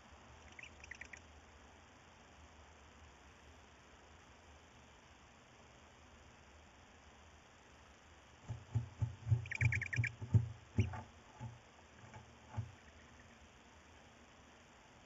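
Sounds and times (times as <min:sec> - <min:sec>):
owl chicks squeaking: 0:00.4 - 0:01.2, 0:08.5 - 0:13.4
thumps against nest box: 0:08.4 - 0:12.8.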